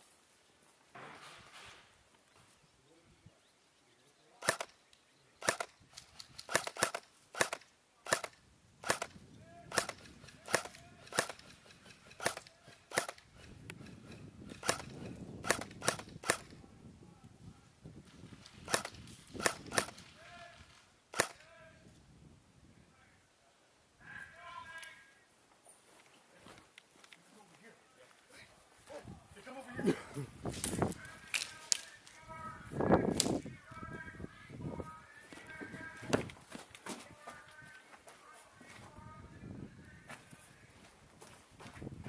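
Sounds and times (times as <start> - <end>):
airsoft gun shots: 4.4 - 4.7, 5.4 - 13.6, 14.4 - 16.5, 18.6 - 20.2, 21.1 - 21.4.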